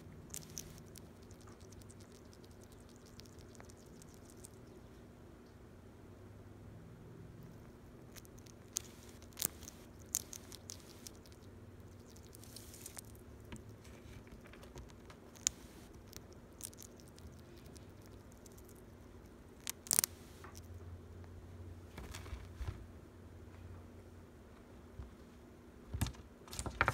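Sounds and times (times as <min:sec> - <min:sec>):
small animal chewing and crunching: 0:00.0 - 0:05.1, 0:07.2 - 0:22.7.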